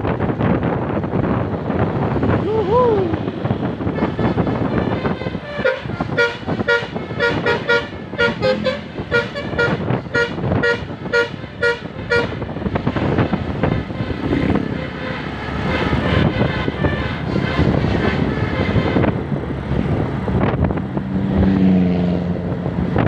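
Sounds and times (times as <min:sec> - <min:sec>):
road and engine noise: 0:00.0 - 0:23.0
multi-tone vehicle horn tune: 0:03.5 - 0:20.0.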